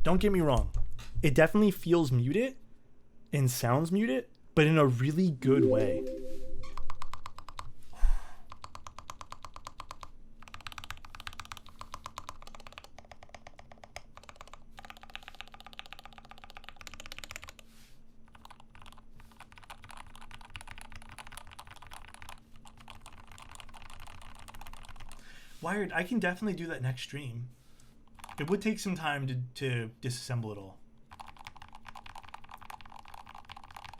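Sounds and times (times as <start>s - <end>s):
mechanical keyboard typing: 6.8s - 7.7s, 8.5s - 17.6s, 18.3s - 25.2s, 28.2s - 28.6s, 31.1s - 33.9s.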